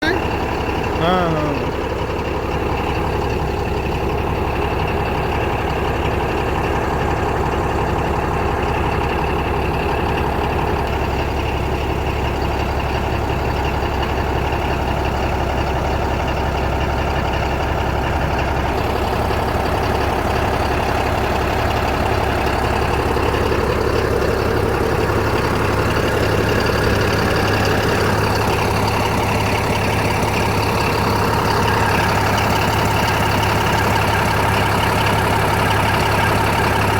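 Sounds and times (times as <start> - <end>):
bulldozer diesel engine running: 0.0 - 36.9.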